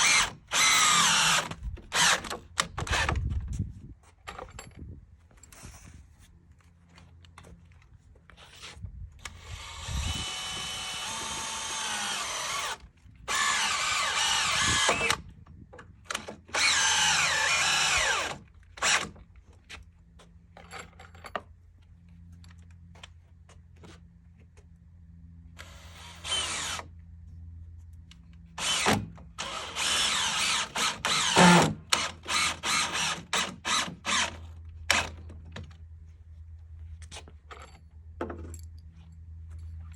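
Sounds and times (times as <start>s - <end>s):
power drill driving screws into wood: 0.0s - 3.3s, 9.2s - 15.3s, 16.1s - 19.2s, 25.6s - 26.9s, 28.6s - 35.2s.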